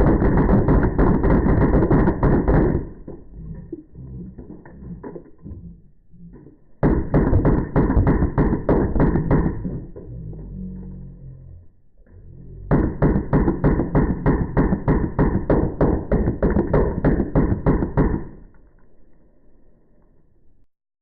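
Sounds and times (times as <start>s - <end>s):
electronic bb gun firing: 0.0s - 3.2s, 6.8s - 10.0s, 12.7s - 18.6s.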